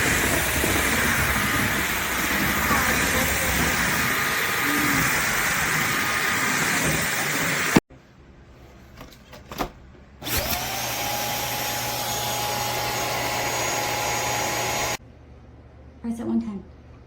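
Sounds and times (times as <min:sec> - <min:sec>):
vacuum motor running: 0:00.0 - 0:07.8, 0:10.2 - 0:15.0.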